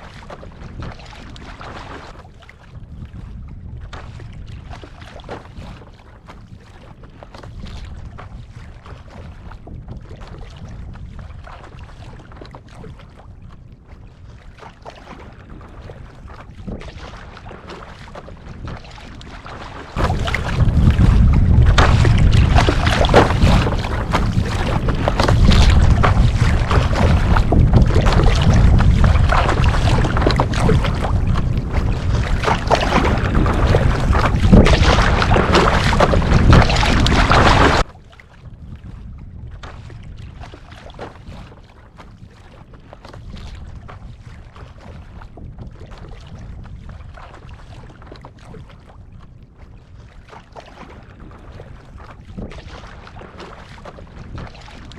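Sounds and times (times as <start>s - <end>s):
wind buffeting microphone: 0.0s - 54.9s
water splashing against board: 14.6s - 37.9s.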